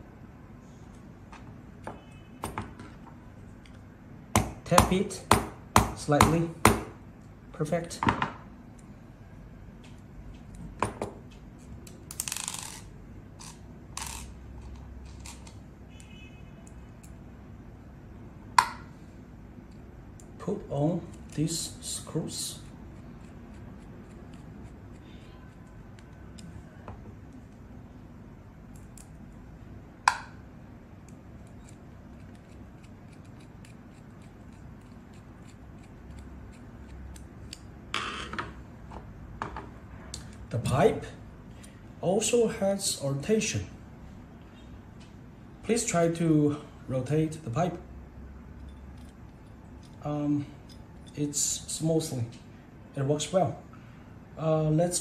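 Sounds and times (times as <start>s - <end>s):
metal parts clicking and tapping: 48.6s - 51.2s.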